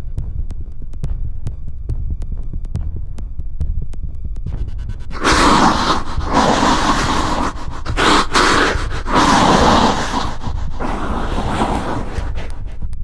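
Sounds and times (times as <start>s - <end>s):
heavy rasping breaths: 5.1s - 12.9s.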